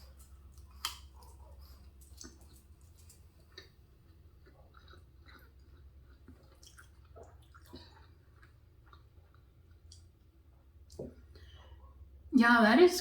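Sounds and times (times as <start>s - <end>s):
close chewing: 0.0s - 11.4s
faint low hum: 0.0s - 13.0s
wet mouth clicks and smacks: 0.2s - 1.4s, 2.0s - 3.8s, 6.2s - 7.8s.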